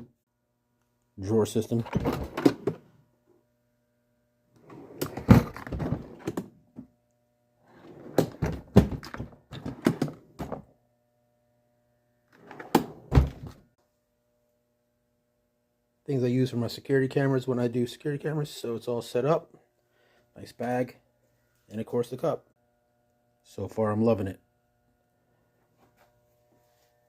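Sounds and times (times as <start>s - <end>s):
plastic drawers opening and shutting: 1.8s - 2.9s, 4.6s - 6.5s, 7.7s - 10.6s, 12.4s - 13.6s.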